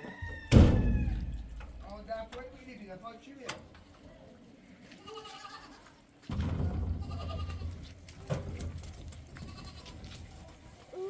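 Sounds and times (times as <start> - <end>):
small livestock bleating: 4.9 - 5.9, 7.1 - 7.7, 9.4 - 10.0.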